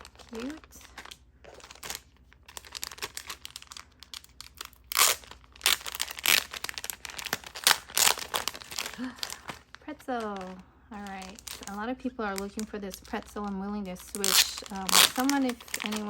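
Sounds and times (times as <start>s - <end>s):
packaging crinkling and tearing: 0.0s - 16.0s.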